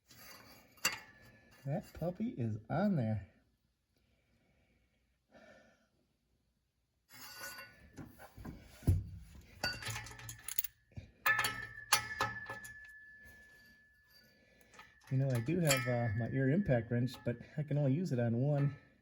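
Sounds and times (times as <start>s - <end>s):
metal hand tools clanking: 9.6s - 10.7s, 11.3s - 13.8s, 14.6s - 18.9s
metal ringing tone: 11.3s - 19.0s.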